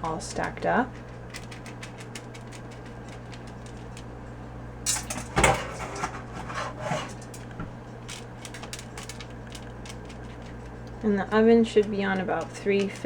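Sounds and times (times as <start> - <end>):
steady low hum: 0.0 - 13.0
kitchen knocks and rattles: 4.9 - 7.8.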